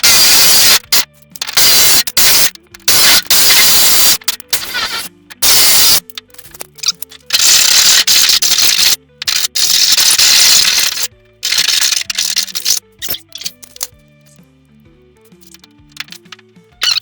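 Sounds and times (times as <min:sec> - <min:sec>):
power tool cutting sheet steel: 0:00.0 - 0:06.1, 0:07.3 - 0:12.8
faint background music: 0:00.0 - 0:17.0.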